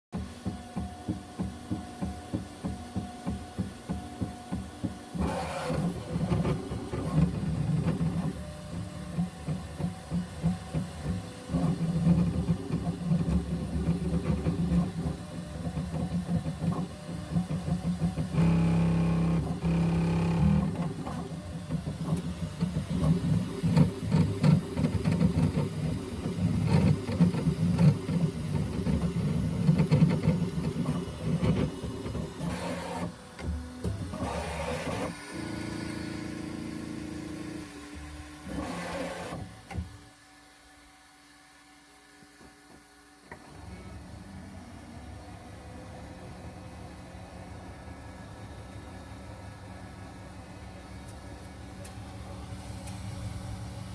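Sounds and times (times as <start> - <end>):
printer motors pulsing buzz: 0.2 - 53.9.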